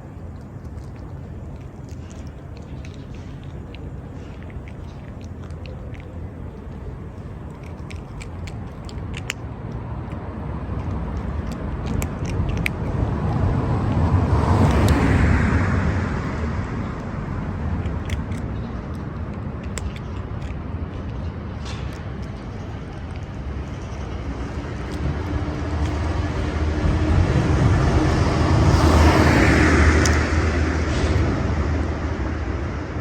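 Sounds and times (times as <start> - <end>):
cat crunching food: 0.0 - 32.0
vehicle passing by: 9.8 - 19.8, 23.3 - 33.0.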